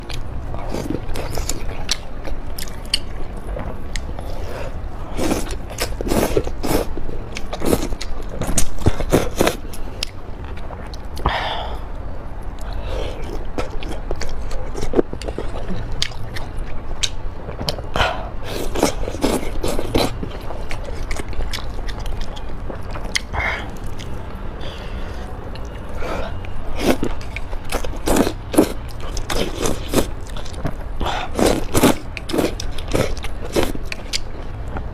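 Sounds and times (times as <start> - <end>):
chewing and biting food: 0.0 - 11.3, 12.6 - 34.9
steady low hum: 0.0 - 34.9.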